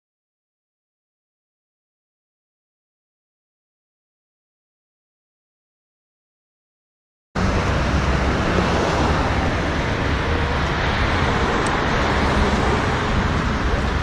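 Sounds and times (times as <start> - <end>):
road traffic rumble: 7.4 - 14.0
wind on microphone: 7.4 - 14.0.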